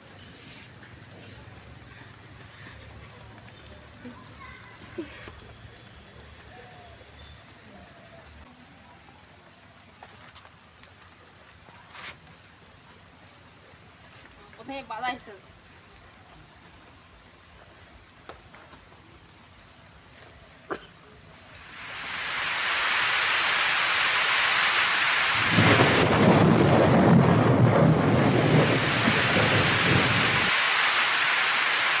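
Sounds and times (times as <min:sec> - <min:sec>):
loud rushing noise: 0:21.7 - 0:32.0
deep rumble: 0:25.4 - 0:30.5.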